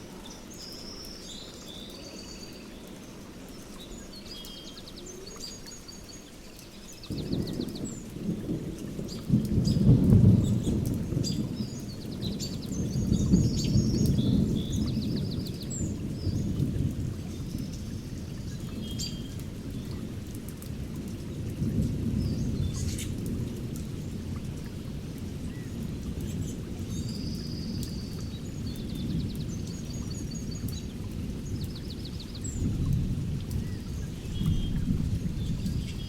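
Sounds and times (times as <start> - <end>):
steady rain: 0.0 - 36.0
birds chirping and trilling: 0.2 - 16.5
low rolling thunder: 7.0 - 36.0.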